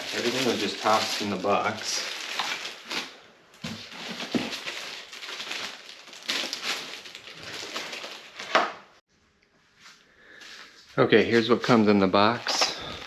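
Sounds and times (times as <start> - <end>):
rustling and scraping of parts: 0.0 - 5.7.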